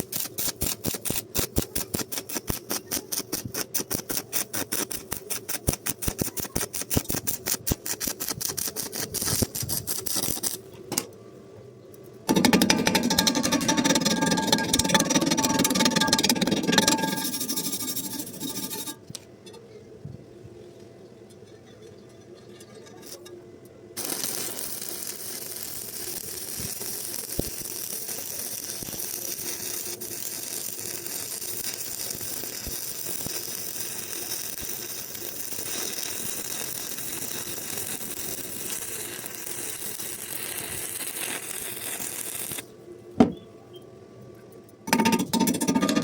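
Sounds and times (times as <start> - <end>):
welding arc crackling: 0.0 - 11.1, 12.3 - 19.0, 24.0 - 42.7.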